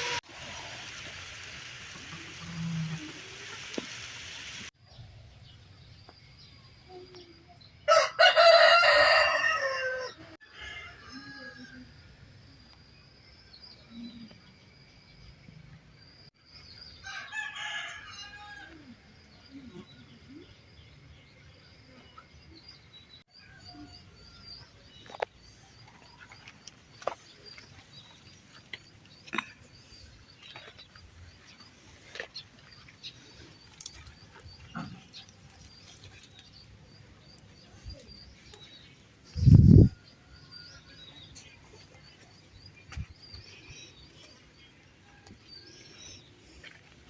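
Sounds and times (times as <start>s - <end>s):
rooster crowing: 7.9s - 11.9s, 17.0s - 18.9s.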